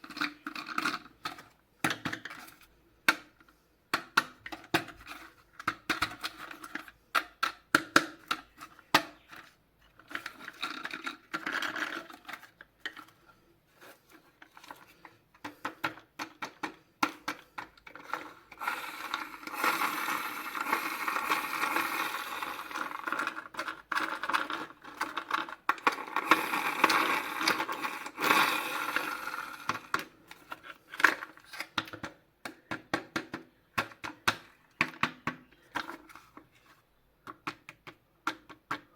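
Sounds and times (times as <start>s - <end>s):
plastic clicks and taps: 3.0s - 5.0s, 29.7s - 36.4s, 37.2s - 38.9s
continuous scraping: 11.8s - 15.2s.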